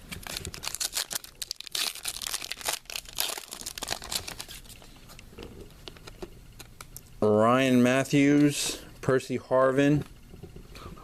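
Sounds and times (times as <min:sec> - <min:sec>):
wrapper crinkling and tearing: 0:00.1 - 0:05.2.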